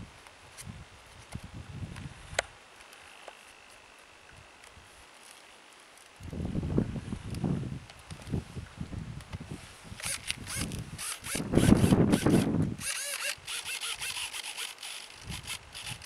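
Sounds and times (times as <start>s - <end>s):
wind buffeting microphone: 0.0s - 2.4s, 6.2s - 13.0s, 15.2s - 16.0s
model airplane motor buzzing: 10.0s - 16.0s.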